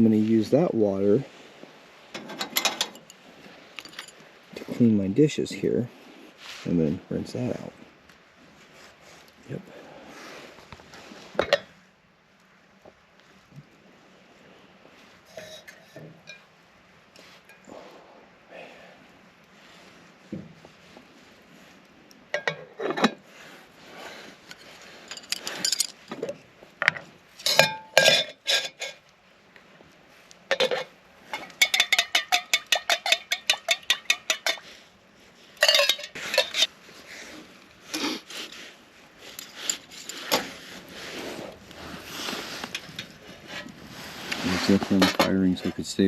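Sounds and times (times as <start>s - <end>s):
metal cookware clinking: 27.4s - 29.0s, 30.5s - 34.6s, 35.6s - 36.7s.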